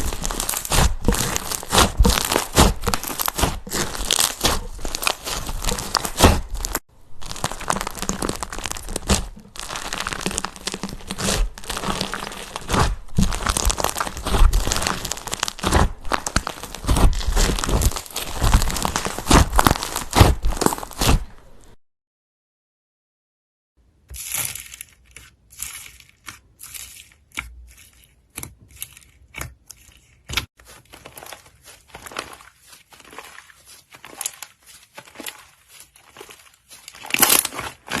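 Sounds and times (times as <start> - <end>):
slime squished crackling and popping: 0.0 - 21.2, 31.0 - 38.0.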